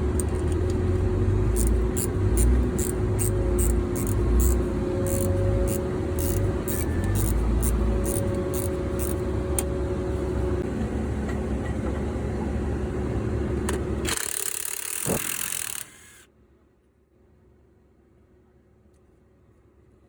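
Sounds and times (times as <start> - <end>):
diesel truck engine running: 0.0 - 11.2.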